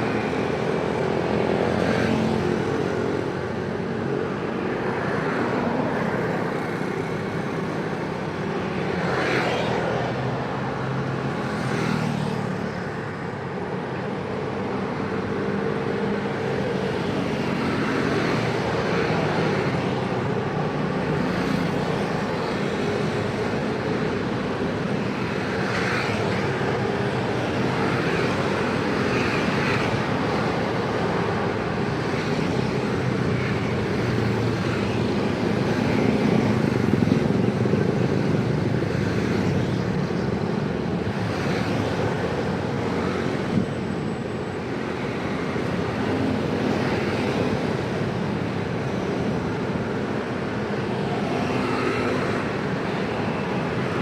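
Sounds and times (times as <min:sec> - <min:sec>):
busy road traffic: 0:00.0 - 0:54.0.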